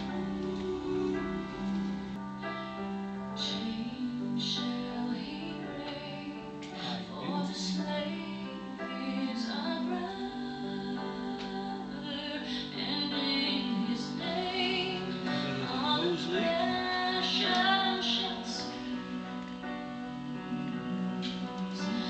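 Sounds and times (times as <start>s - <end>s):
woman singing: 0.0s - 1.8s, 3.4s - 22.0s
sustained accompaniment: 0.0s - 3.3s, 13.7s - 22.0s.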